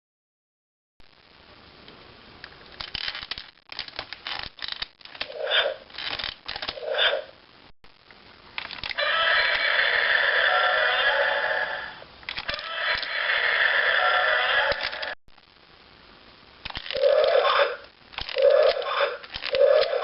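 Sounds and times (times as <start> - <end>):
plastic toy clicking and scraping: 2.7 - 6.8, 8.6 - 9.6, 12.3 - 13.2, 14.7 - 15.2, 16.6 - 17.4, 18.1 - 20.0
loud electronic monster roar: 9.0 - 14.8.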